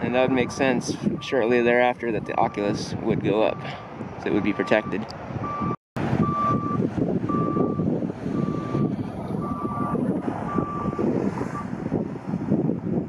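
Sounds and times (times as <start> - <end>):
reversing alarm beeping: 4.4 - 11.0.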